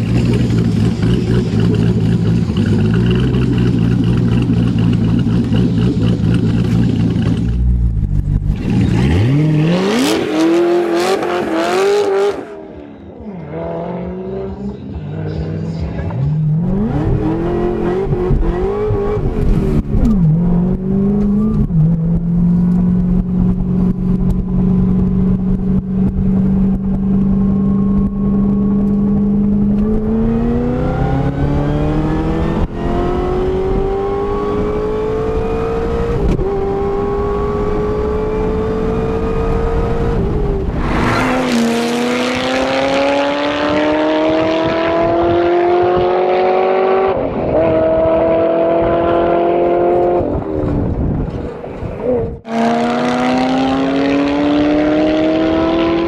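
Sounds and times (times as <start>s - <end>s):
car engine revving and accelerating: 0.0s - 56.0s.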